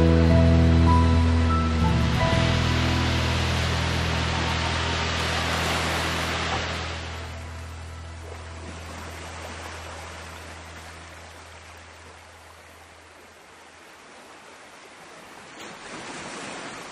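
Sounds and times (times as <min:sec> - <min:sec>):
low sustained music note: 0:00.0 - 0:13.2
rushing water: 0:00.0 - 0:16.9.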